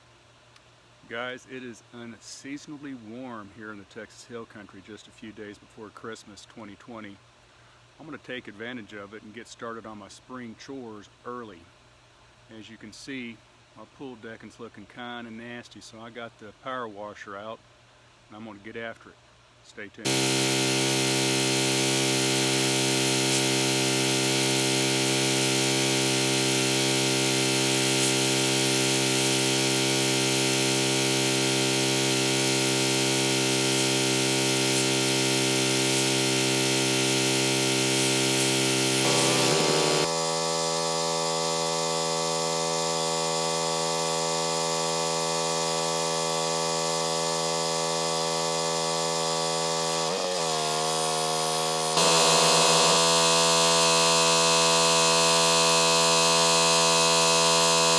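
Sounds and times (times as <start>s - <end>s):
loud hiss: 20.0s - 57.9s
pressure washer motor drone: 20.0s - 57.9s.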